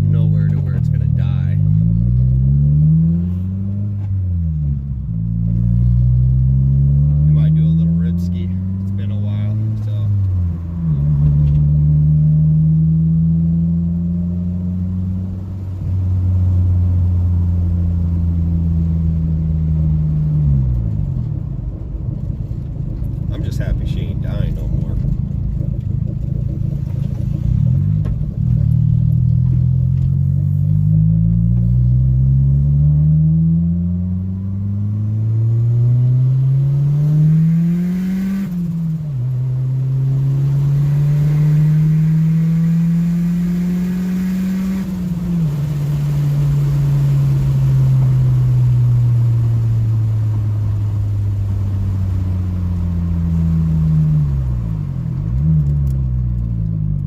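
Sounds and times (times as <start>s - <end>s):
car engine accelerating through gears: 0.0s - 57.0s
engine rev blips: 28.7s - 50.1s.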